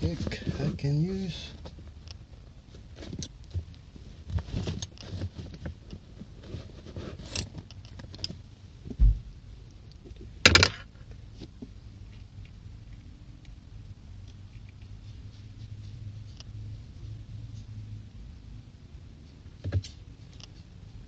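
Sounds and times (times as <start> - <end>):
dull thump: 8.9 - 9.3.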